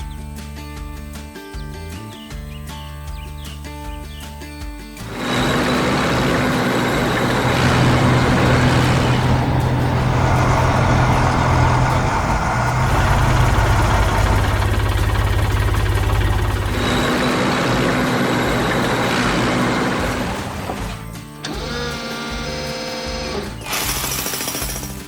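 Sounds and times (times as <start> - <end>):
diesel engine running: 5.0 - 24.8.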